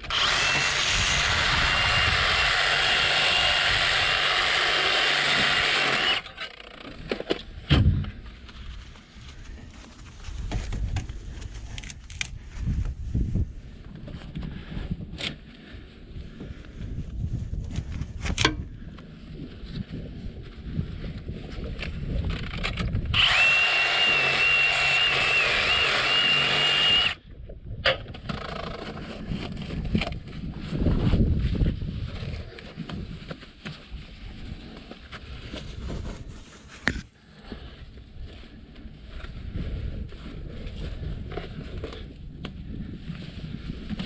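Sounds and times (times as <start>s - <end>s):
power tool whining: 0.0s - 6.8s, 23.1s - 27.2s.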